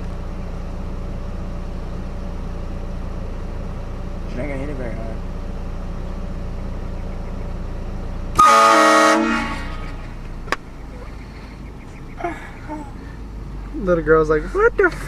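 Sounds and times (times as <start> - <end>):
train horn blast: 8.3 - 10.1.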